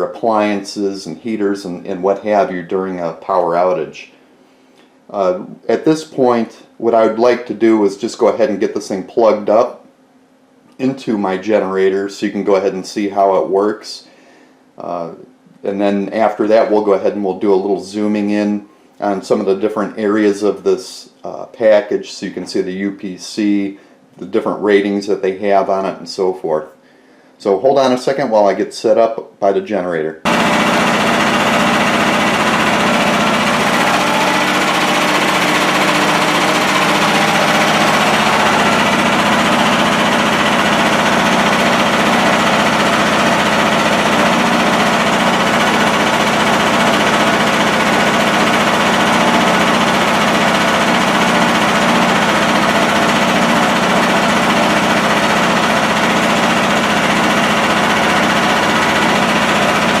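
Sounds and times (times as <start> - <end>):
generator engine running: 30.3 - 60.0.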